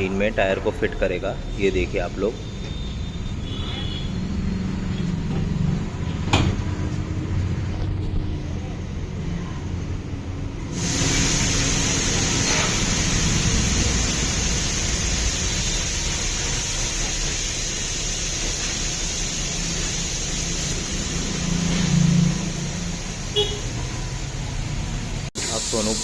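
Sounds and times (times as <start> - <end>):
compressed air hissing: 1.8 - 5.4, 10.7 - 24.0, 25.4 - 26.0.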